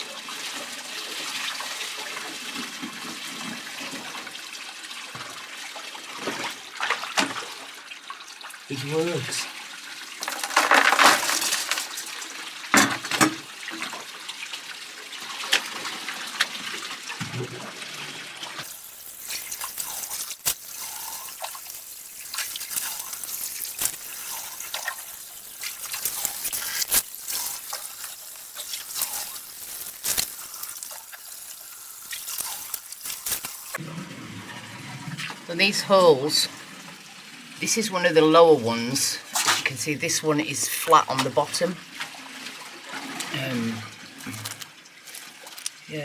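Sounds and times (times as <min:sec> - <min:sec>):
water trickling and dripping: 0:00.0 - 0:10.8, 0:11.5 - 0:33.8, 0:35.1 - 0:46.0
loud clatter: 0:10.2 - 0:12.1
sharp clicks and knocks: 0:12.8 - 0:13.4.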